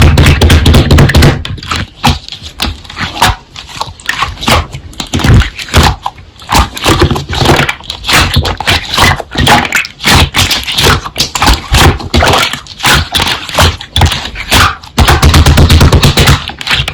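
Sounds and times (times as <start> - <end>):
slime squished by hand: 0.0 - 16.9.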